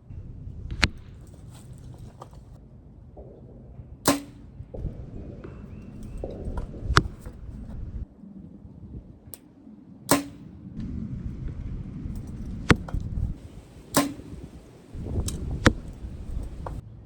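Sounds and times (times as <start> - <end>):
wind rumble on microphone: 0.0 - 17.0
bow string snap: 4.1 - 4.5, 10.1 - 10.9, 12.2 - 16.8.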